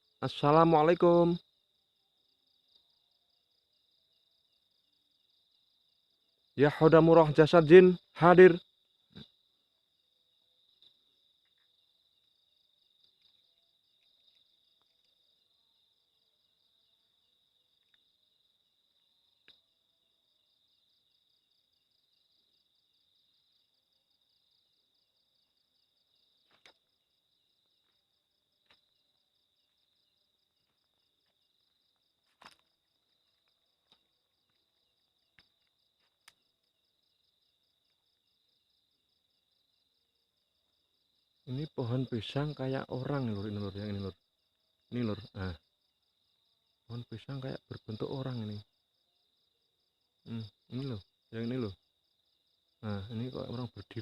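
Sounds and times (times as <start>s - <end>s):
crickets chirring: 0.0s - 54.0s
faint ticks: 13.0s - 15.2s, 19.4s - 19.7s.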